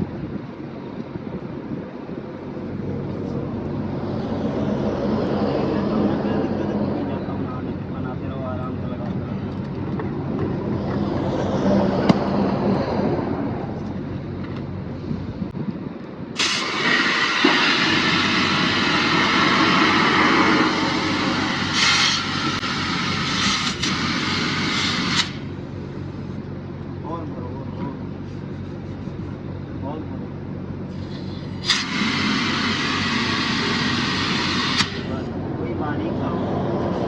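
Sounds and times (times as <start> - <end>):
low engine hum: 0.0 - 37.0
compressed-air hiss: 16.4 - 25.5, 30.9 - 35.2.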